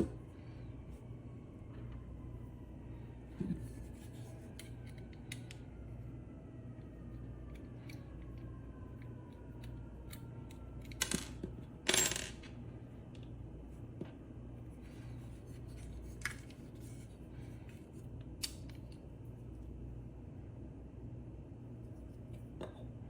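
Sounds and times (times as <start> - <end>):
steady low hum: 0.0 - 23.0
small parts clicking and clinking: 7.5 - 12.6.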